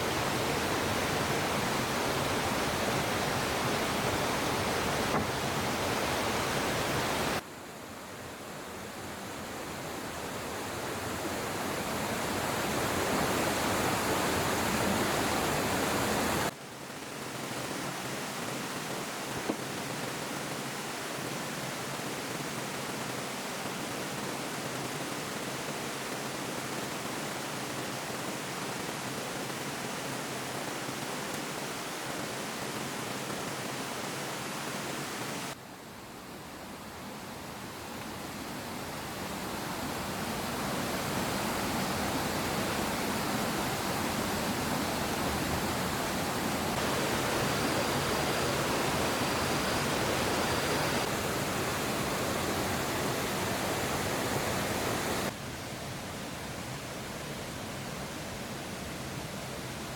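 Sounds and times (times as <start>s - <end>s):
steady rushing noise: 37.4s - 55.4s.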